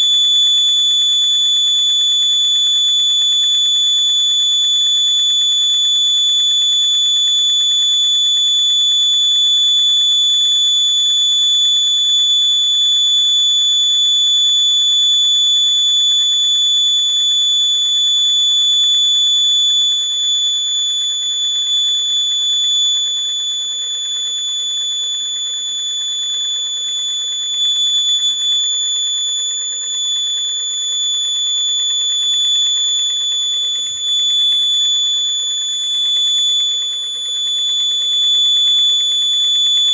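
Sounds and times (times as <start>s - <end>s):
electronic buzzer tone: 27.5s - 39.9s.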